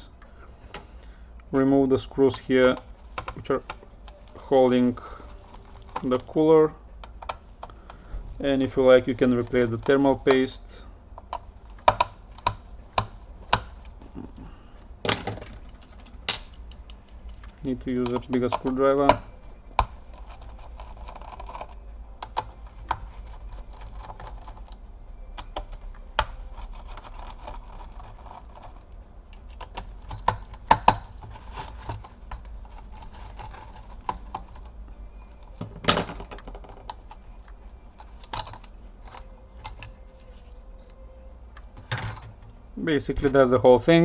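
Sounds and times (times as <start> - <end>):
screwdriver clicks and taps: 11.2 - 13.7.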